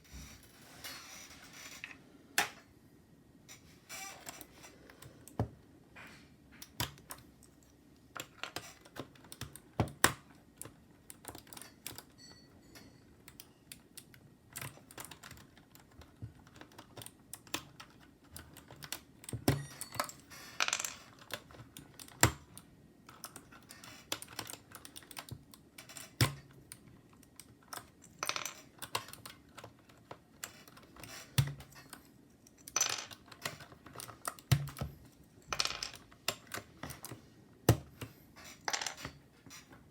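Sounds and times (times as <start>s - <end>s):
mechanical keyboard keys clacking: 6.6s - 20.2s, 21.0s - 34.9s.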